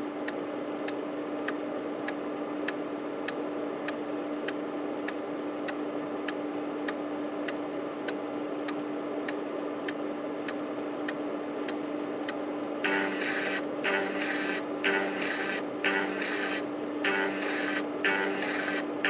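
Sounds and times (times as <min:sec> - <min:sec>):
floppy drive motor hum: 0:00.0 - 0:19.0
rapid head stepping buzz: 0:12.8 - 0:19.0.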